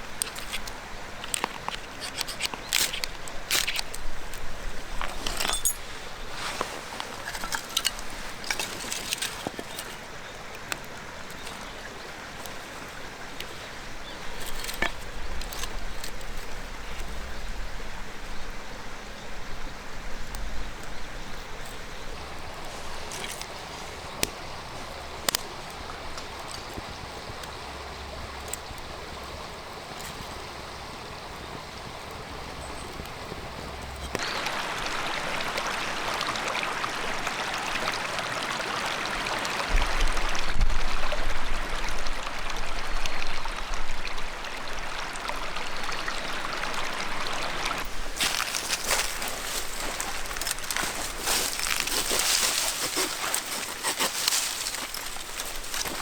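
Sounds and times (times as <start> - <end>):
stream running: 0.0 - 56.0.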